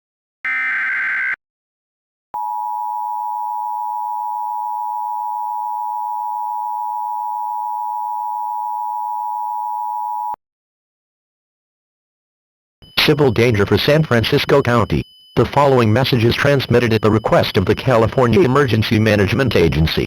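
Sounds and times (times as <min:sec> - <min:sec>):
two-tone alert alarm: 0:00.5 - 0:01.4, 0:12.8 - 0:20.0.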